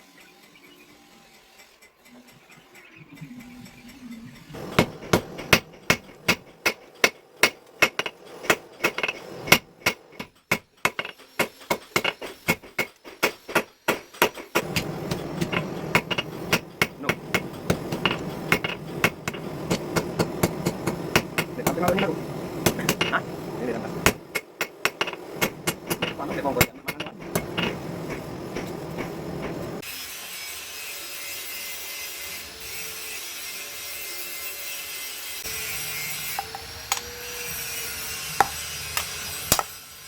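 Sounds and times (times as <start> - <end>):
hammer striking steel on anvil: 4.6 - 23.3, 24.0 - 29.8, 38.0 - 39.8
low hum: 14.6 - 24.4, 25.2 - 29.8.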